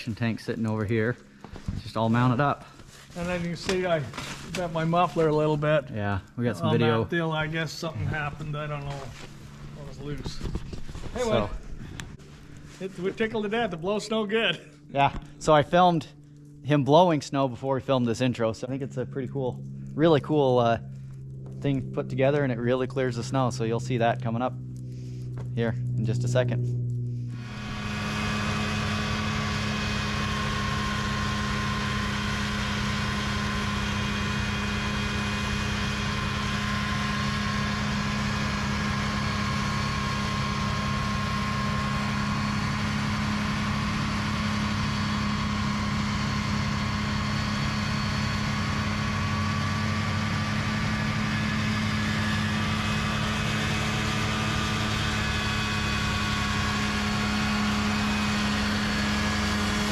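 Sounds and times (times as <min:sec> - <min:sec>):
snowblower engine running: 0:00.0 - 0:59.9
backhoe engine: 0:26.8 - 0:59.9.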